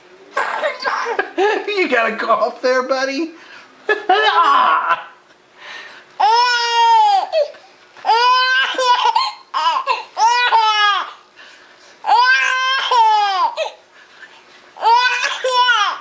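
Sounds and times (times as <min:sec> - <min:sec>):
high-pitched laughter: 0:03.9 - 0:05.2.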